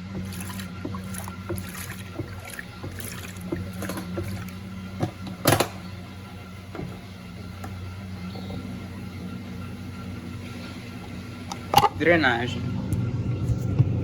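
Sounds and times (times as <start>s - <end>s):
water sloshing: 0.0s - 12.2s
washing machine motor hum: 0.0s - 14.0s.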